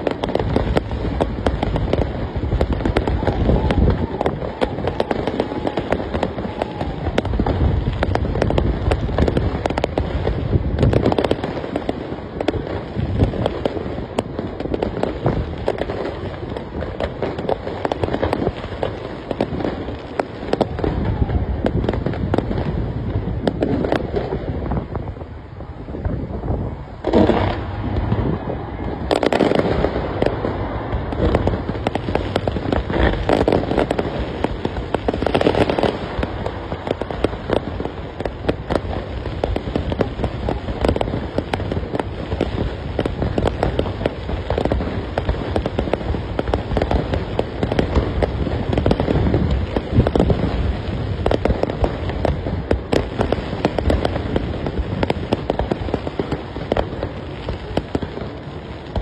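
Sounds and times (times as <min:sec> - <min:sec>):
fireworks bangs and crackling: 0:00.0 - 0:59.0.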